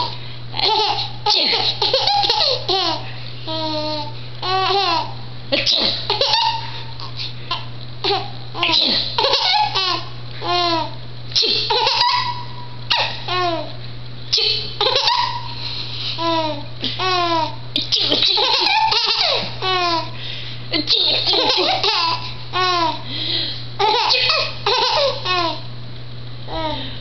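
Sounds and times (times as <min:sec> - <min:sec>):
steady low hum: 0:00.0 - 0:27.0
person laughing: 0:17.8 - 0:19.4, 0:20.7 - 0:22.1.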